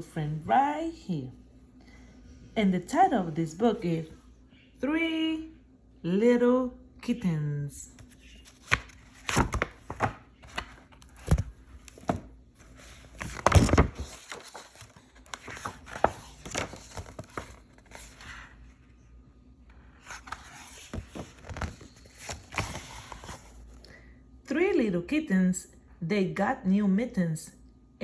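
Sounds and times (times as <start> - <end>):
paper rustling and crinkling: 8.0 - 18.7, 19.8 - 23.7.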